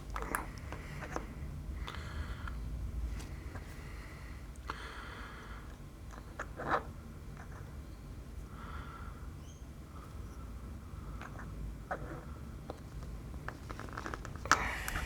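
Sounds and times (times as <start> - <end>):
puff of air: 14.5 - 15.0.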